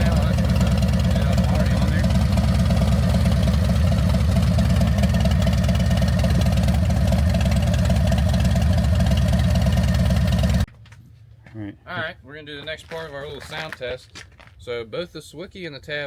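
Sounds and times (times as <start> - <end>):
motorcycle engine idling: 0.0 - 10.7.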